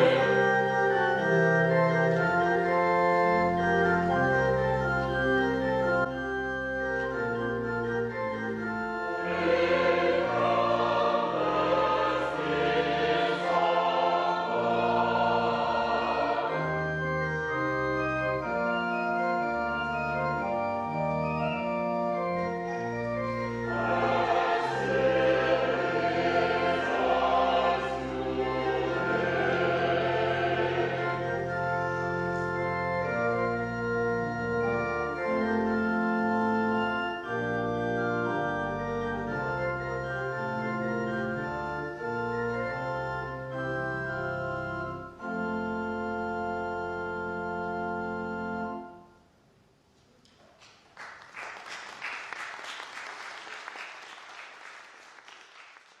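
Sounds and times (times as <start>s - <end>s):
organ playing slow chords: 0.0s - 49.8s
congregation applauding: 50.4s - 56.0s.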